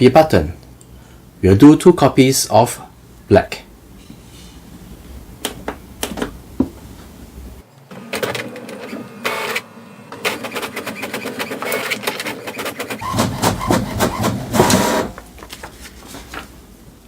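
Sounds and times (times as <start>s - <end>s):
printer mechanism running: 7.9s - 15.5s
rapid clicking of paper feed: 10.2s - 16.5s.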